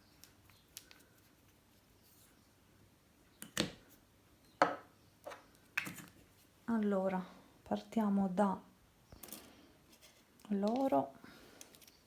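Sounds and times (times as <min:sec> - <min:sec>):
small objects tapping and clicking: 0:10.4 - 0:11.0.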